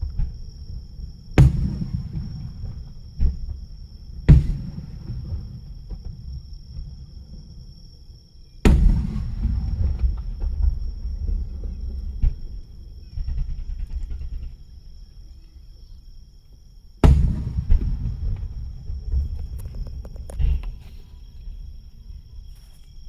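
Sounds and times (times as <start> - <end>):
low rumble after bang: 0.0 - 7.5, 8.6 - 14.6, 17.0 - 22.5
fireworks bursting with bang: 1.4 - 7.0, 8.6 - 11.5, 17.0 - 21.8.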